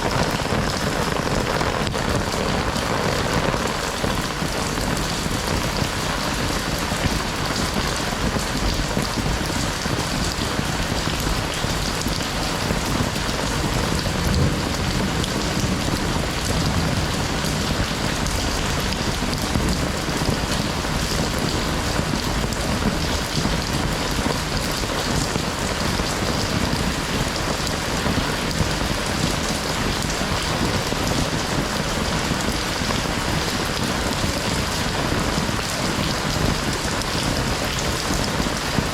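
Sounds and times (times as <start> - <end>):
heavy rain hiss: 0.0 - 38.9.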